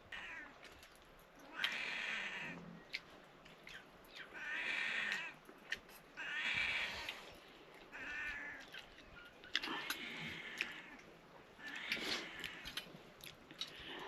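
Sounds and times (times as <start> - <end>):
animal calling: 4.2 - 12.9.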